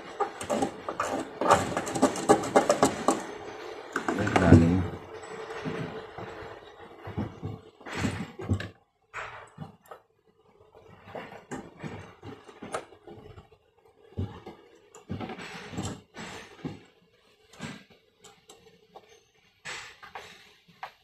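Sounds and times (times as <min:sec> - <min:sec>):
tools clicking and knocking: 0:00.0 - 0:04.6.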